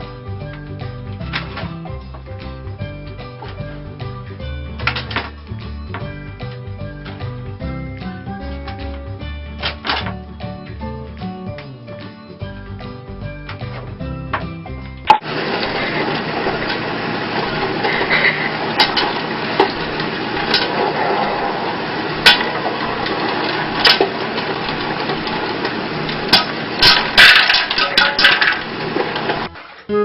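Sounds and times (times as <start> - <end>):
hard objects knocking and clattering: 13.5 - 29.5.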